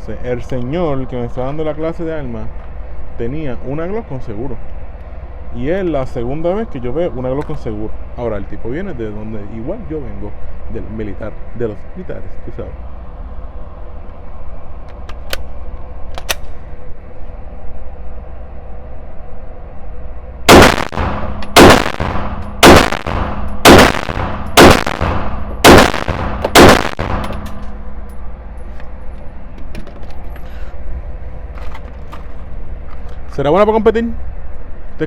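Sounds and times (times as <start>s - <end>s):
pistol shots: 20.5s - 27.6s.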